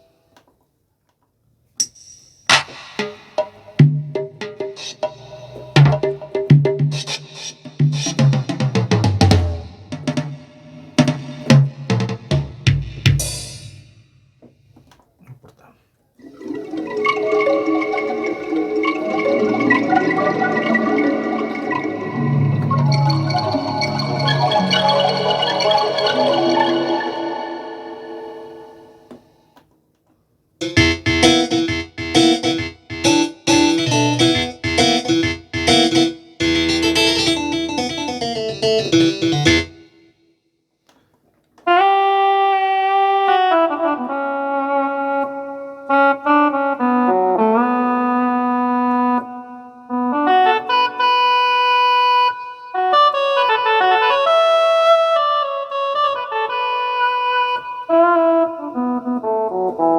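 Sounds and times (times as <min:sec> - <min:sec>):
gliding synth lead melody: 0:16.3 - 0:29.1, 0:30.6 - 0:39.8
synthesizer chord stabs: 0:16.6 - 0:29.2, 0:30.6 - 0:40.0.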